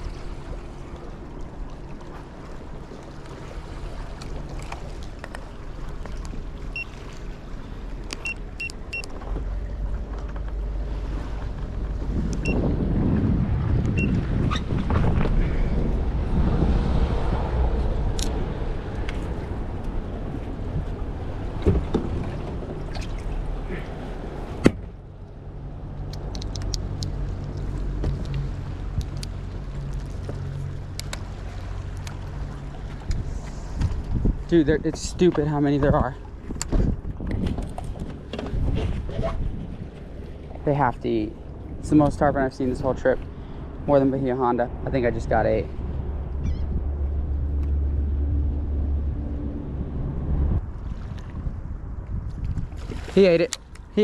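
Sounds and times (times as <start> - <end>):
boat motor rumbling: 0.0 - 54.0
water noise: 0.0 - 54.0
wind: 0.0 - 54.0
light ticks: 29.0 - 31.3.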